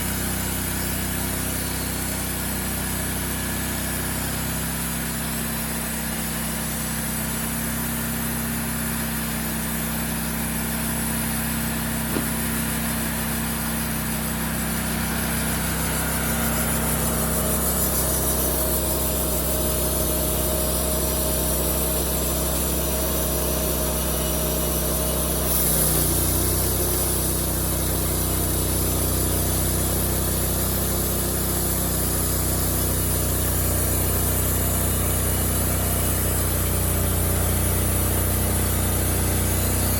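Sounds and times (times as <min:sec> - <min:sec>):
sawmill engine under load: 0:00.0 - 0:39.9
band blade cutting log: 0:11.9 - 0:27.3.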